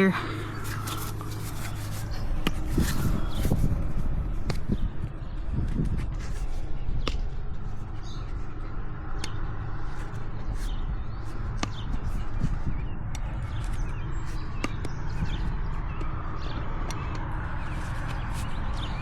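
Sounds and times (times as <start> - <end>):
steady low rumble: 0.0 - 19.0.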